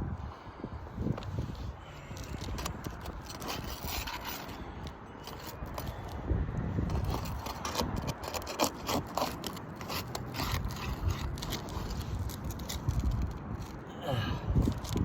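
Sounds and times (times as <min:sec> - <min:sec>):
tool scraping roof shingles: 0:02.1 - 0:06.2, 0:06.8 - 0:13.8.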